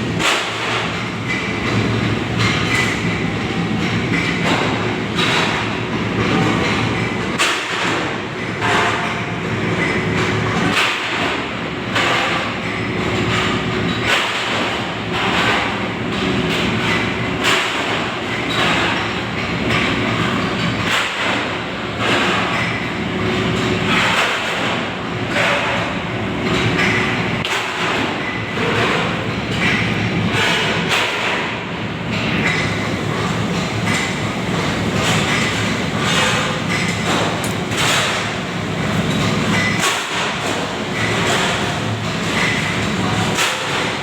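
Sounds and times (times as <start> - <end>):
oil burner roaring: 0.0 - 44.0
knocks and clatter: 23.5 - 44.0.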